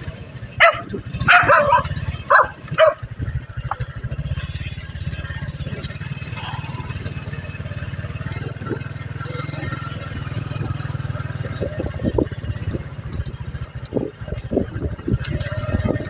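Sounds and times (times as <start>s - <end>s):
motorcycle engine throbbing: 0.0s - 16.0s
dog barking: 0.6s - 3.1s.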